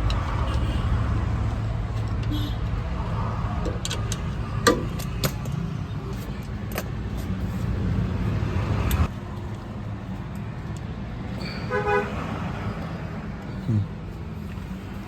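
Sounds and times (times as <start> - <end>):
spanner clicking on bolts: 3.6 - 7.4.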